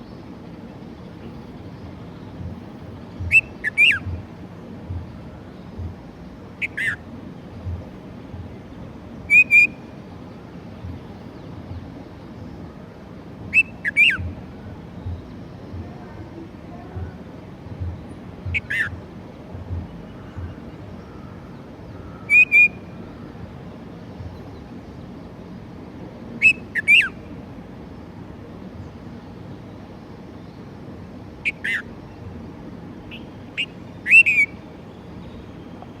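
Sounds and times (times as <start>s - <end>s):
bird whistling calls: 3.2s - 4.2s, 6.6s - 7.0s, 9.3s - 9.9s, 13.5s - 14.4s, 18.5s - 19.0s, 22.0s - 22.9s, 26.4s - 27.3s, 31.4s - 32.0s, 33.1s - 34.6s.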